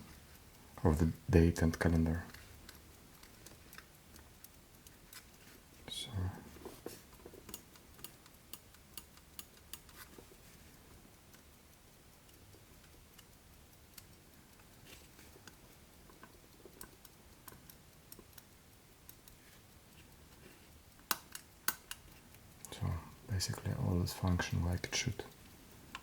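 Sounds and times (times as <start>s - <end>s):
pocket watch clicks: 7.2s - 10.2s, 11.1s - 22.7s.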